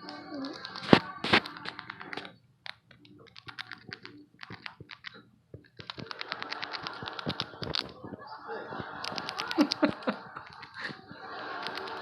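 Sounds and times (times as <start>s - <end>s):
rat crunching a chip: 0.3s - 8.1s, 9.0s - 11.0s, 11.6s - 12.0s.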